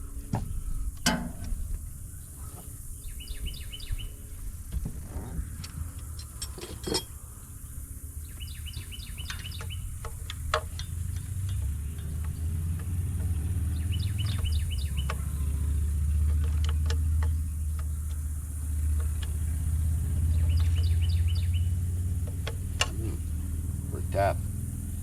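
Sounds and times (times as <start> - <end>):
small bird singing: 1.8 - 4.7, 5.4 - 25.0
metallic clinks of hand tools: 6.2 - 7.1.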